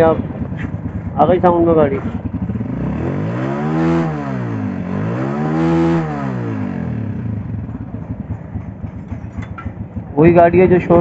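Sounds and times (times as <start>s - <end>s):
motorcycle engine revving and idling: 0.0s - 11.0s.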